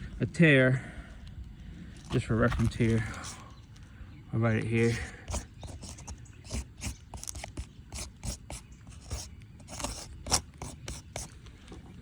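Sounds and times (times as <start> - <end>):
writing scratches on roof shingle: 2.0 - 3.5, 4.8 - 11.4.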